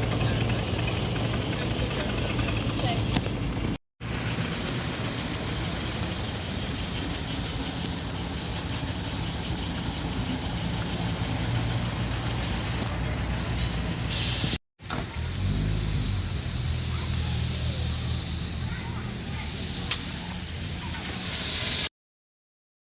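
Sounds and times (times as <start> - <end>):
engine humming: 0.0 - 21.7
burst of hiss: 14.1 - 21.9.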